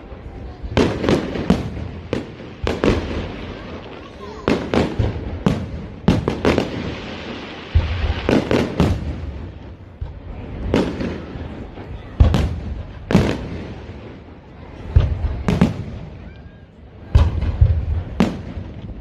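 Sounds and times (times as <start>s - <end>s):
fireworks bursting: 0.0s - 19.0s.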